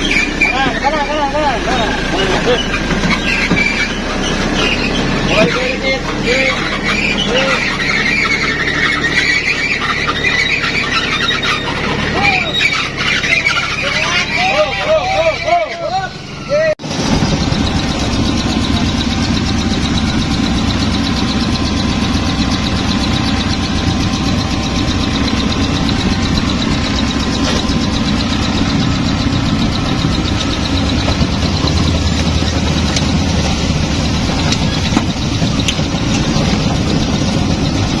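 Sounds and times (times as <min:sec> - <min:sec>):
vehicle engine running: 0:00.0 - 0:38.0
sharp clicks and knocks: 0:17.0 - 0:38.0.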